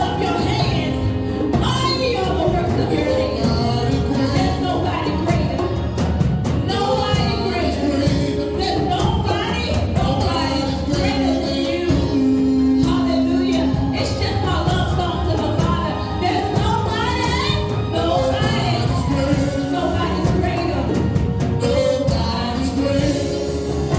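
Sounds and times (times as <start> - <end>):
worship singing with band: 0.0 - 23.9.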